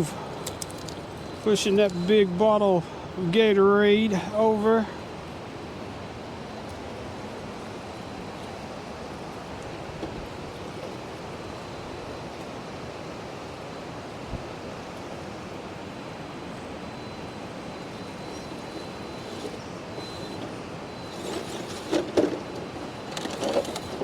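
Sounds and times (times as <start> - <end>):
faint high whine: 0.0 - 24.0.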